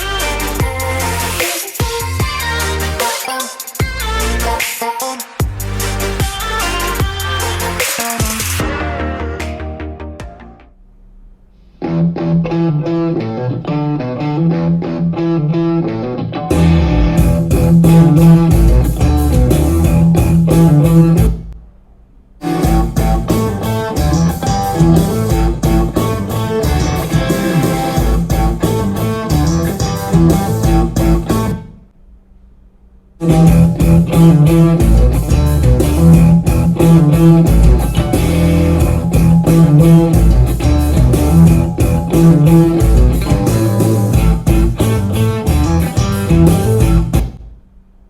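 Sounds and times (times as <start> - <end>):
rock music through speaker: 11.8 - 21.4, 22.4 - 31.6, 33.2 - 47.3.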